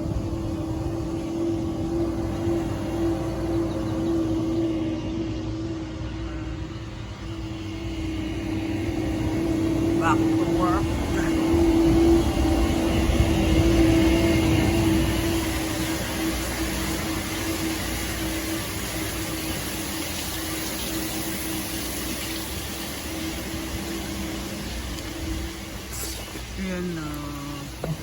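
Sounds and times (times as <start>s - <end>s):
milking machinery humming: 6.6s - 28.0s.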